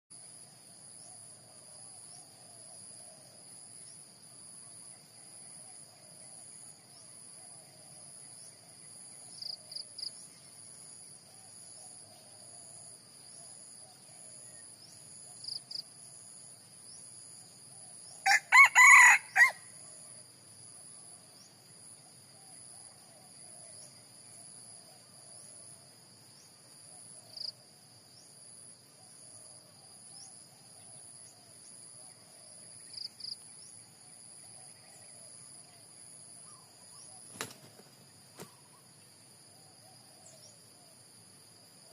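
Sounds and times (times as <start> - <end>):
rooster crowing: 18.2 - 19.7.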